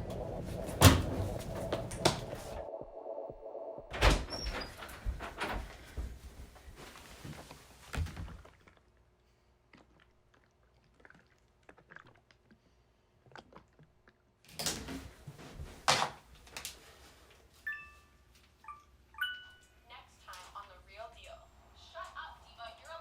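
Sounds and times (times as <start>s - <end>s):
short high tones: 17.7s - 19.9s.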